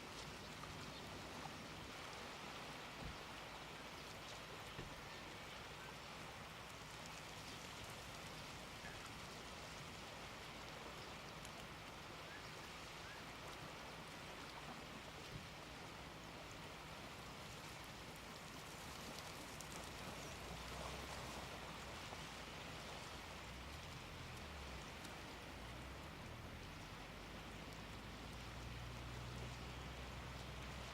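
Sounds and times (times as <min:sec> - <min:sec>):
small waves washing on shore: 0:00.0 - 0:30.9.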